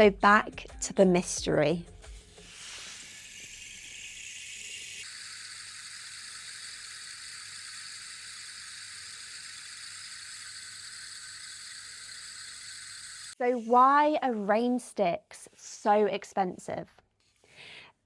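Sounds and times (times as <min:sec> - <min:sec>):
rain stick trickling: 0:02.4 - 0:13.4.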